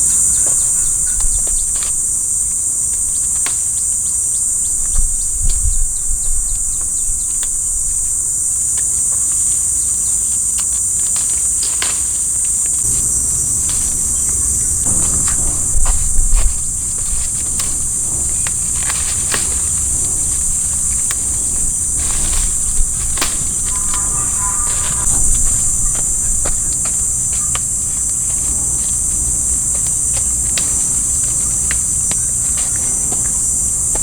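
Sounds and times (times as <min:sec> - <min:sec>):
insects chirring: 0:00.0 - 0:34.0
low rumble: 0:12.8 - 0:29.7.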